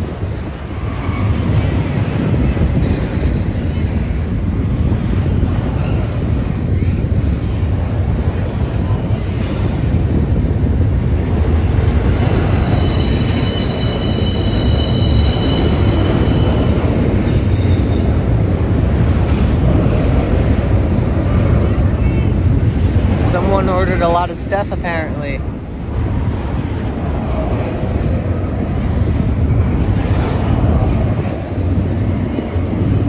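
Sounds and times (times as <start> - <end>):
train wheels rumbling on rail: 0.0 - 33.0
metallic wheel squeal: 12.3 - 18.2.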